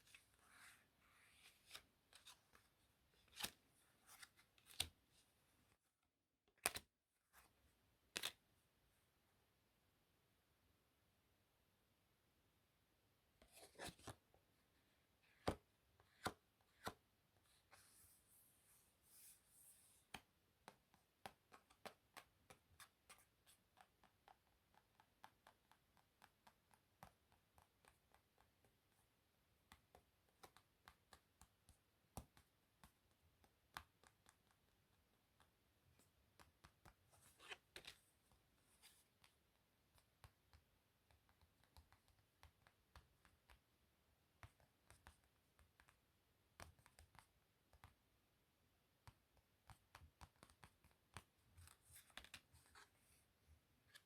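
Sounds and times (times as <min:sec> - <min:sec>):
playing cards clicking and tapping: 0:03.3 - 0:05.0, 0:06.6 - 0:06.9, 0:49.0 - 0:52.7.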